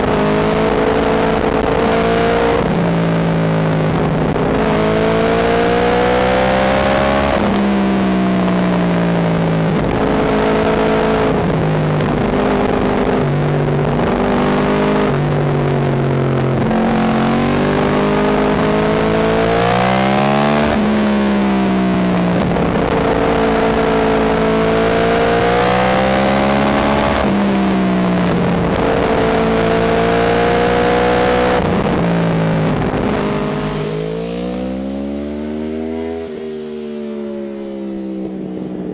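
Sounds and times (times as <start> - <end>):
wind noise: 0.0 - 36.3
sport bike engine revving: 16.3 - 37.4.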